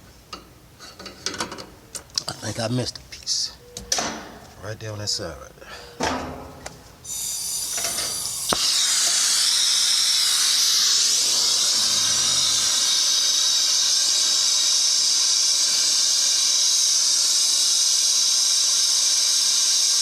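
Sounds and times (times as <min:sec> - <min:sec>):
torch flame hissing: 0:07.0 - 0:20.0
torch ignition click: 0:07.7 - 0:09.4.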